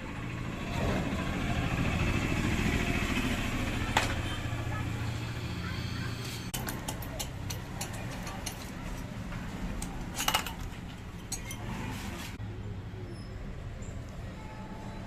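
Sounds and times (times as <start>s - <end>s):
metal tools clinking on bench: 9.8s - 11.7s.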